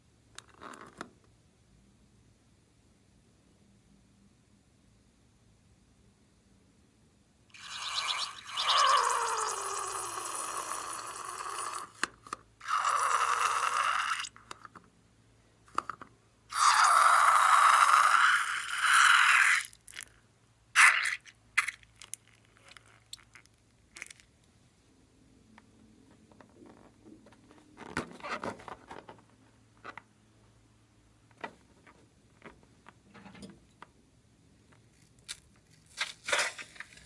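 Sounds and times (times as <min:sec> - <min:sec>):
slime crunching and crackling: 0:34.9 - 0:37.0.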